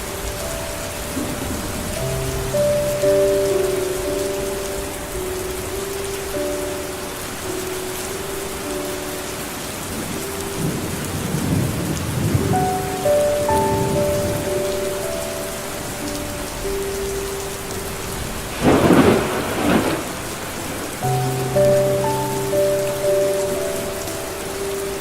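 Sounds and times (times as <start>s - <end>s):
soft music with held notes: 0.0s - 25.0s
steady rain: 0.0s - 25.0s
thunder rumbling and crashing: 18.4s - 20.9s.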